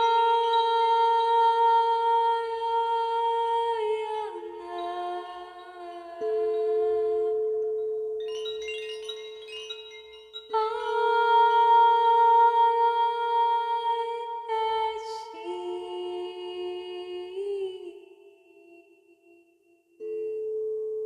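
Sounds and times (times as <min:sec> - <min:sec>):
soft chime notes: 0:04.6 - 0:11.7.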